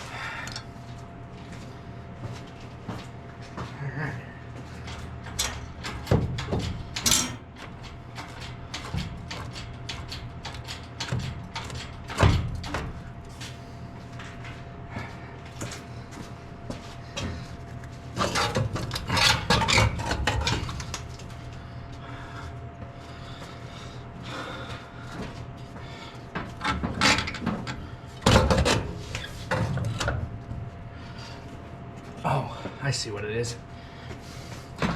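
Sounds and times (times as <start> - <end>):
steady low hum: 0.0 - 34.9
metal scraping and rattling: 5.5 - 7.5
metal tool clinks and knocks: 7.0 - 7.4.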